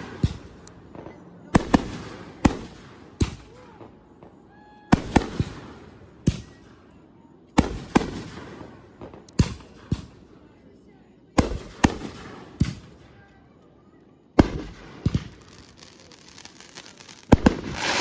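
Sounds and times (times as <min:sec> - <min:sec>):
fireworks bangs: 0:04.3 - 0:06.5, 0:14.4 - 0:18.0.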